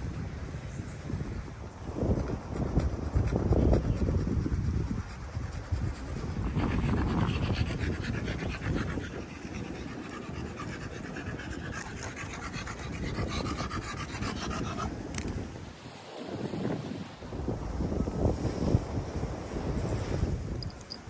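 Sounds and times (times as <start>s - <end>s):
wind rumbling on microphone: 0.0s - 21.0s
dog panting: 2.0s - 15.2s.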